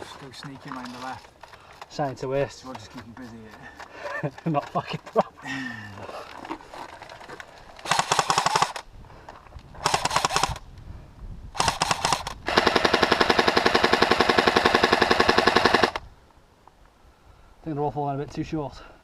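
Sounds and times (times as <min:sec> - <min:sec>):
airsoft rifle full-auto bursts: 0:07.8 - 0:08.8, 0:09.8 - 0:10.6, 0:11.6 - 0:16.0.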